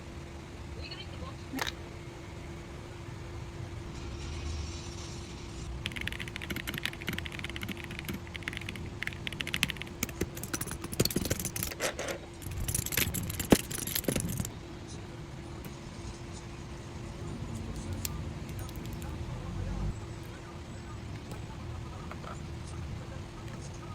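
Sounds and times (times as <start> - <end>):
mechanical keyboard typing: 5.8 - 14.5, 17.6 - 19.2.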